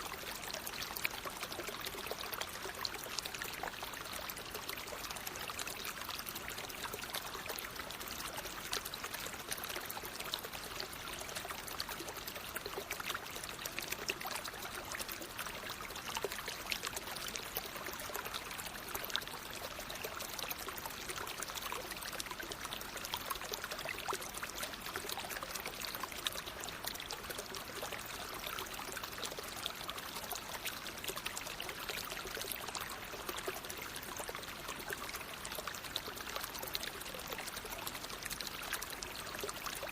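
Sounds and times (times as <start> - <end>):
stream flowing over stones: 0.0 - 39.9.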